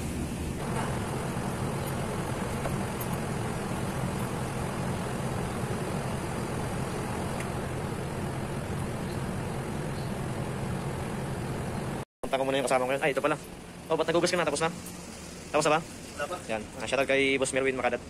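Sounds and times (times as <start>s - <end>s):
mechanical hum with air rush: 0.0s - 18.0s.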